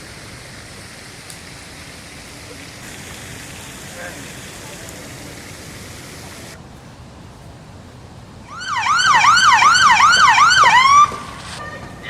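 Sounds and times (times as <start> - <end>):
steady hiss: 0.0 - 8.5, 10.1 - 11.6
police siren yelping: 8.5 - 11.7.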